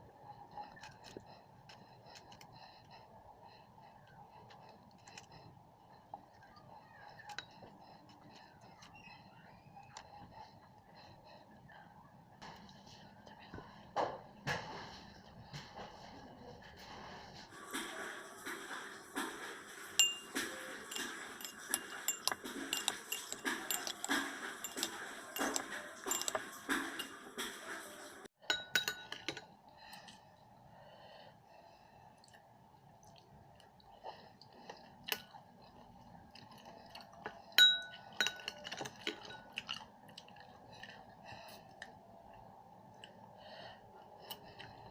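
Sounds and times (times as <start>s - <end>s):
utensils clinking against dishware: 17.5s - 29.5s, 37.5s - 39.8s.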